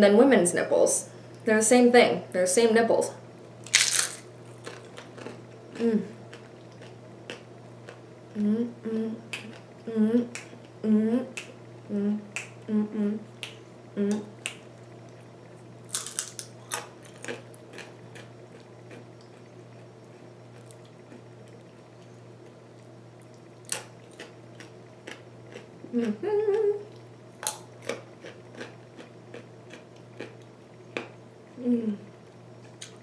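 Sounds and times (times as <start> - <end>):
chewing and crunching crisp food: 3.6 - 8.0, 15.9 - 31.2
person humming: 5.7 - 6.2, 8.3 - 13.3, 13.9 - 14.3, 25.9 - 26.9, 31.6 - 32.1.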